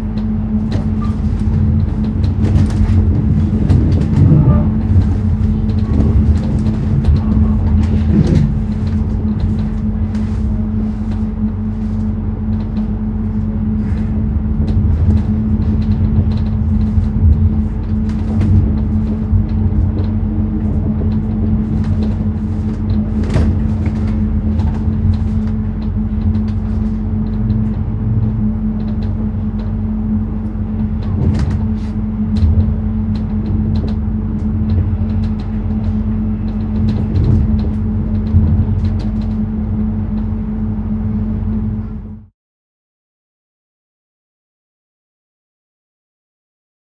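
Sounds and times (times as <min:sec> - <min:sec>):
train interior rumble and hum: 0:00.0 - 0:42.3.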